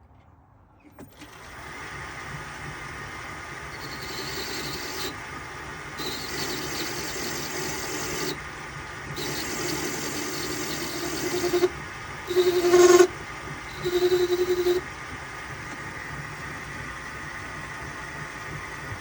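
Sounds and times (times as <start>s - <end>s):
workshop machine running: 1.0s - 19.0s
metal grinding: 3.8s - 5.2s, 6.0s - 8.4s, 9.2s - 11.7s, 12.3s - 14.9s.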